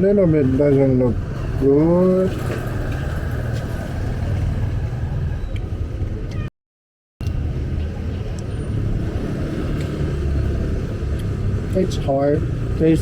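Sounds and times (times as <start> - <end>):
low rumble of vehicle engines: 0.0 - 6.5, 7.2 - 13.0
street noise: 0.0 - 6.5, 7.2 - 13.0.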